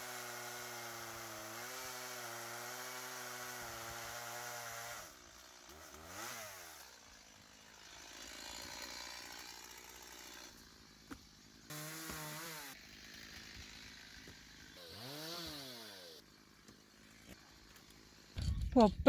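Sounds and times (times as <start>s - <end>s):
chainsaw engine revving: 0.0s - 10.6s, 11.7s - 16.2s.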